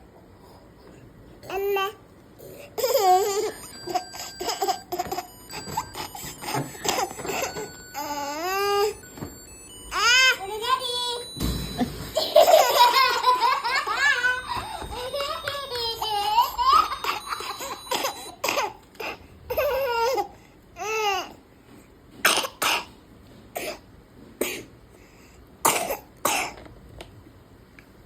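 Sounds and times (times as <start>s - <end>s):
baby laughing and babbling: 1.5s - 9.0s, 12.1s - 21.4s.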